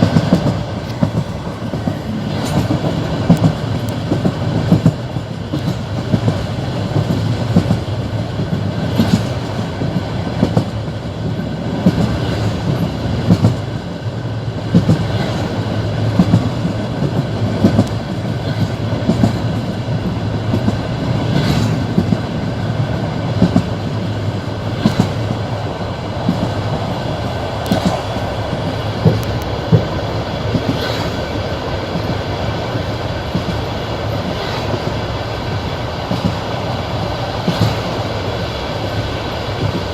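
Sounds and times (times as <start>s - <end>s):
train carriage rumble: 0.0s - 39.9s
train wheels clicking over rail joints: 0.0s - 39.9s.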